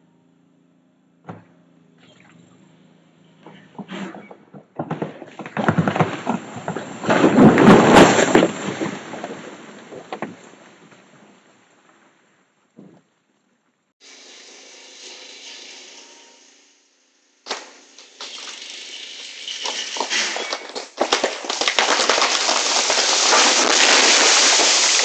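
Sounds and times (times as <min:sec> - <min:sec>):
tree cracking: 0:03.6 - 0:12.2, 0:17.5 - 0:25.0
tree crashing onto house: 0:04.4 - 0:12.2, 0:17.5 - 0:25.0.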